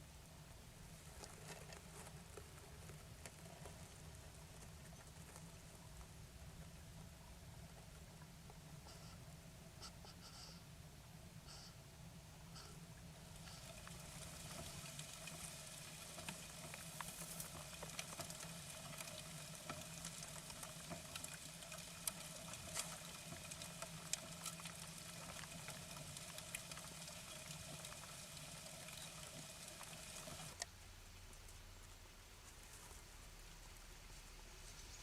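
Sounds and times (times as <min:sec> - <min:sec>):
steady electrical hum: 0:00.0 - 0:35.0
animal feeding clicks and crunches: 0:13.4 - 0:30.7.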